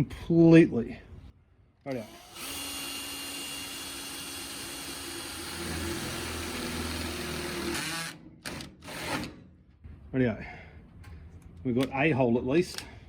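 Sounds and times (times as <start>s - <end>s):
power drill boring: 1.9s - 9.4s.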